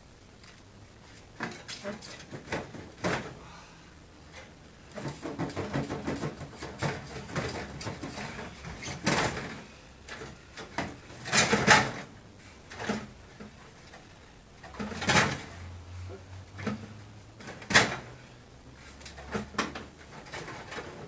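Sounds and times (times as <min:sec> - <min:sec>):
scraping rattling and knocks: 0:01.4 - 0:03.4, 0:04.9 - 0:12.1, 0:12.7 - 0:15.7, 0:18.8 - 0:21.0.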